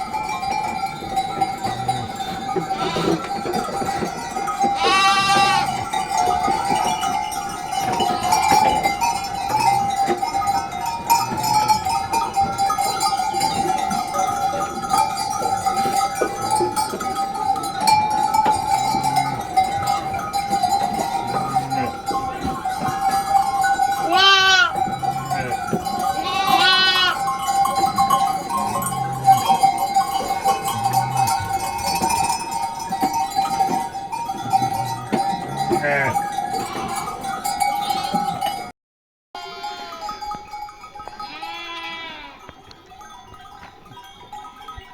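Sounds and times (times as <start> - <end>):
sheep bells clanking: 0.0 - 38.7, 39.4 - 44.9
sheep bleating: 1.7 - 3.4, 4.8 - 6.0, 21.0 - 22.4, 24.0 - 27.3, 28.6 - 29.7, 34.6 - 37.1, 39.4 - 40.2, 41.2 - 42.4.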